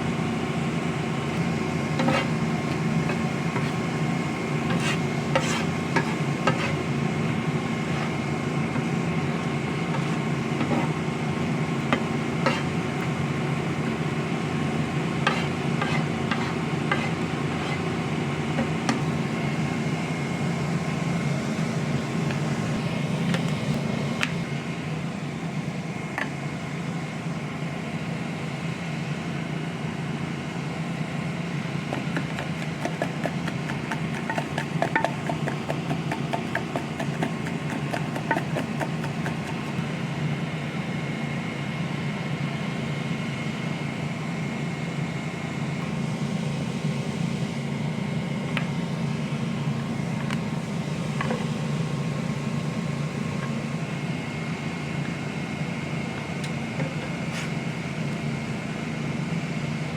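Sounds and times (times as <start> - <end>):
steady hum: 0.0 - 28.8
utensil stirring and tapping: 2.0 - 3.8, 4.6 - 6.8, 9.9 - 10.9, 31.9 - 39.8.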